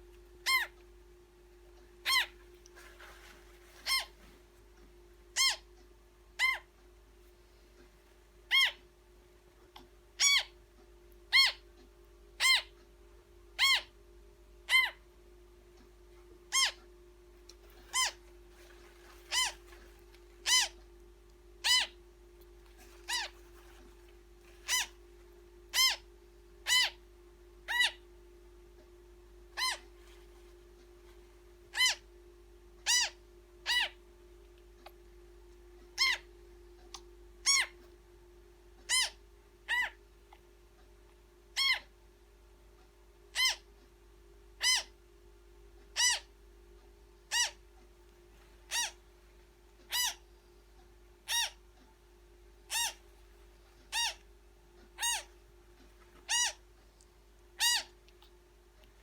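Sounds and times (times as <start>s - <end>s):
faint steady hum: 0.0s - 59.0s
parrot chick peeping: 0.1s - 0.9s, 1.9s - 4.4s, 5.3s - 6.8s, 8.4s - 8.9s, 9.7s - 10.6s, 11.3s - 11.8s, 12.4s - 12.9s, 13.5s - 14.0s, 14.6s - 15.1s, 16.4s - 28.1s, 29.5s - 30.5s, 31.6s - 32.1s, 32.8s - 34.0s, 35.9s - 38.0s, 38.8s - 40.5s, 41.5s - 42.0s, 43.3s - 43.7s, 44.6s - 45.0s, 45.8s - 46.3s, 47.2s - 47.7s, 48.4s - 49.1s, 49.7s - 51.8s, 52.6s - 59.0s.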